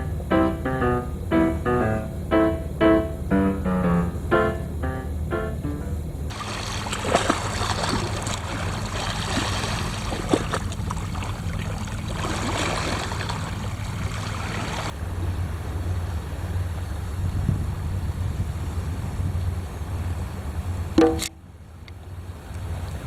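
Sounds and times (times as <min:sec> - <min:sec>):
faint piano music: 0:00.0 - 0:15.9
wind rumble on microphone: 0:04.1 - 0:23.0
sea water splashing over rocks: 0:06.3 - 0:15.0.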